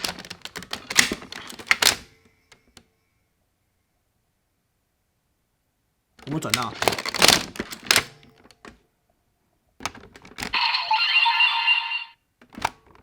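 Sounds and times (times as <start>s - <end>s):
toy electronic sound effect: 10.6s - 12.2s.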